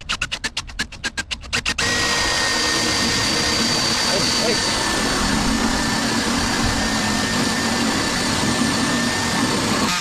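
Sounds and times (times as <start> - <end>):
electric drill boring into wood: 1.4 - 10.0.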